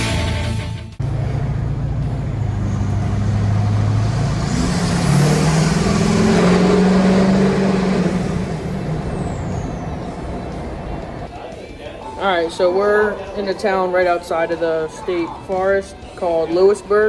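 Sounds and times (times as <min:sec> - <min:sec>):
vehicle engine hum: 0:01.0 - 0:11.3.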